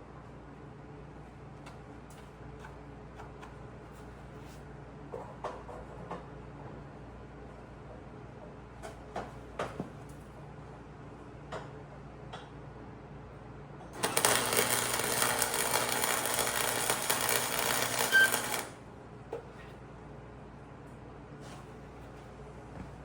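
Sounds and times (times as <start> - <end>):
welding arc crackling: 14.0 - 18.8.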